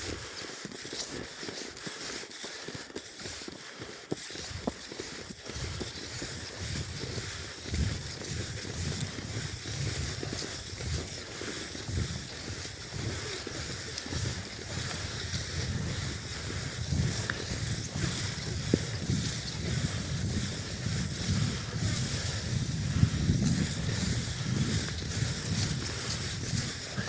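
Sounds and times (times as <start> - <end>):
skis sliding and creaking on snow: 0.0 - 27.0
wind rumble on microphone: 5.4 - 27.0.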